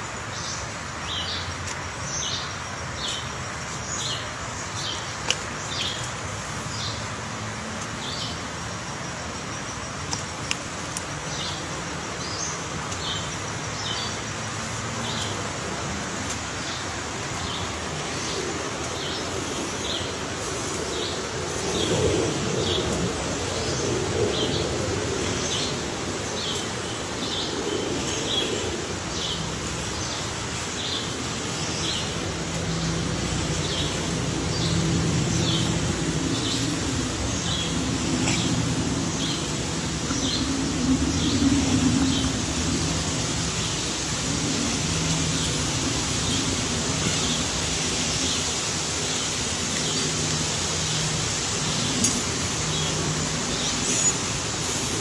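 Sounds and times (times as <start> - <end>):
low engine-like hum: 5.0 - 55.0
bird chirping: 50.9 - 55.0.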